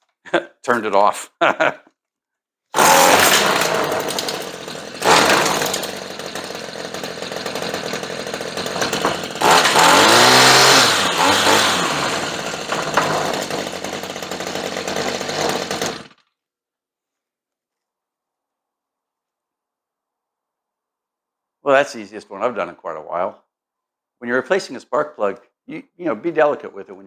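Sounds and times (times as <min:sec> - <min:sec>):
string trimmer engine running: 0:02.8 - 0:16.2.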